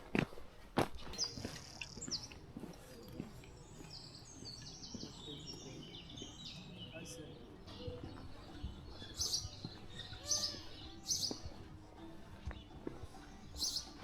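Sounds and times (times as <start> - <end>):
footsteps: 0.0 - 4.0, 7.8 - 13.8
songbird singing: 1.0 - 14.0.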